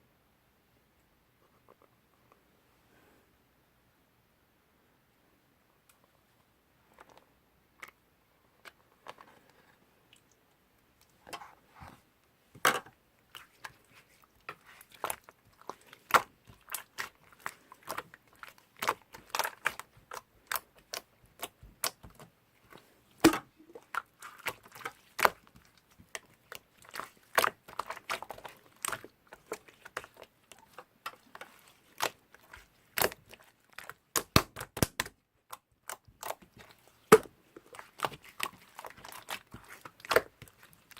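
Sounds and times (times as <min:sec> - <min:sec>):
slime squished by hand: 0:13.2 - 0:40.9.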